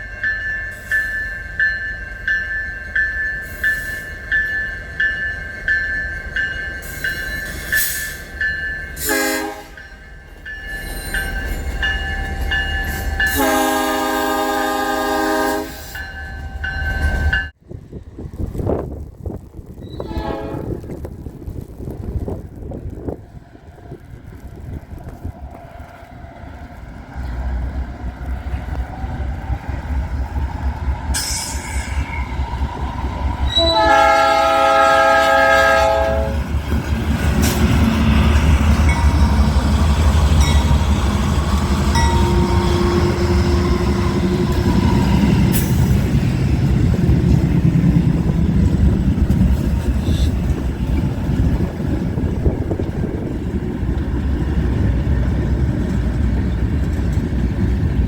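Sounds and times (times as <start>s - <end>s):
train rumble: 0.0s - 58.0s
train horn blast: 9.0s - 9.8s, 13.2s - 16.0s, 20.0s - 20.9s, 33.5s - 36.4s, 41.9s - 45.1s.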